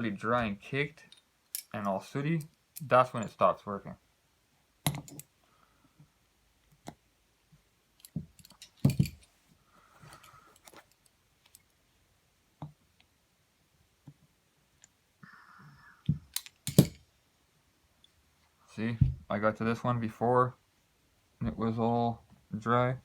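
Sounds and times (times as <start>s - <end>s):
clicks and knocks of metal parts: 1.0s - 1.8s, 4.8s - 5.3s, 8.0s - 9.3s, 16.3s - 17.0s.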